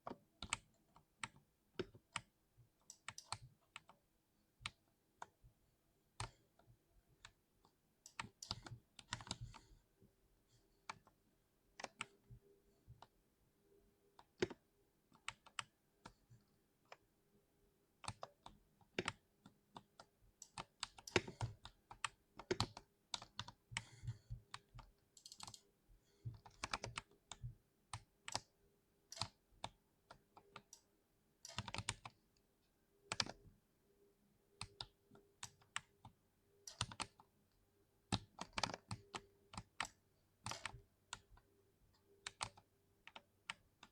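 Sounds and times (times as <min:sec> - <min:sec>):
keyboard typing: 0:08.0 - 0:09.7, 0:18.0 - 0:33.5, 0:34.5 - 0:37.4, 0:38.1 - 0:43.9.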